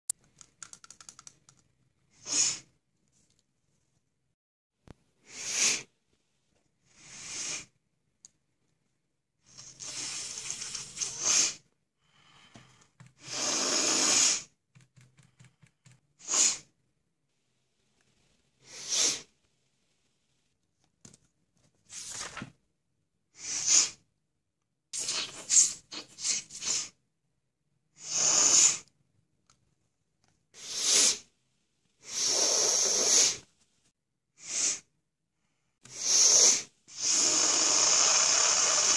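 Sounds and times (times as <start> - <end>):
person sniffing: 2.1 - 2.7, 5.2 - 6.0, 6.8 - 7.8, 9.5 - 14.6, 16.2 - 16.7, 18.6 - 19.4, 23.3 - 24.0, 25.0 - 27.0, 28.0 - 28.9, 30.5 - 31.3, 32.0 - 33.5, 34.4 - 34.9, 35.8 - 38.9.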